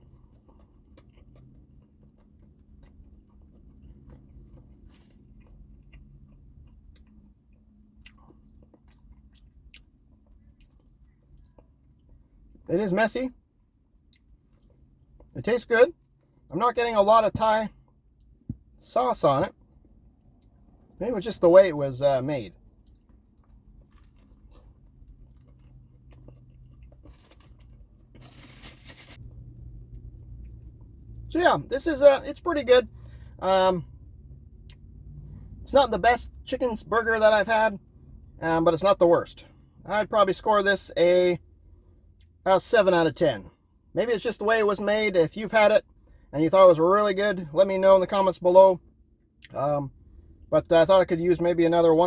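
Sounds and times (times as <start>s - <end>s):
person chewing food: 0.0s - 12.6s, 14.0s - 15.3s, 22.6s - 31.1s
low steady hum: 0.0s - 52.0s.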